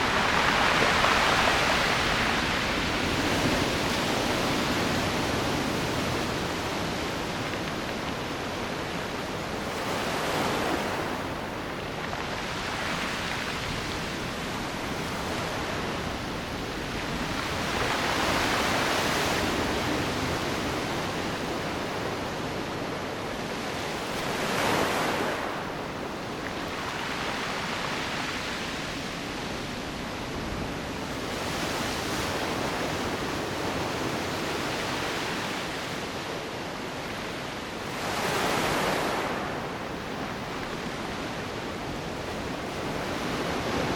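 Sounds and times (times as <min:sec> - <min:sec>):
ocean waves breaking: 0:00.0 - 0:43.9.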